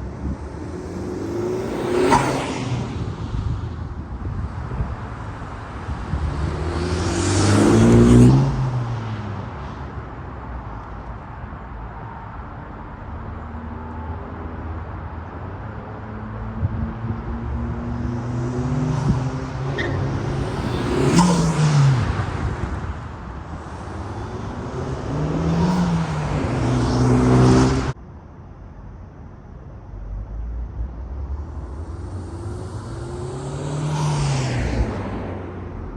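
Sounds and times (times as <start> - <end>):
car engine accelerating hard: 5.9 - 9.3, 16.6 - 28.0.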